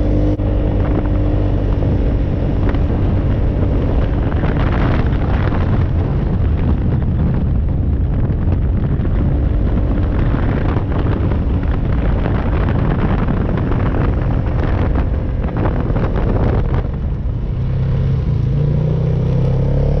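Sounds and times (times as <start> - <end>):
vehicle engine running and revving: 0.0 - 20.0.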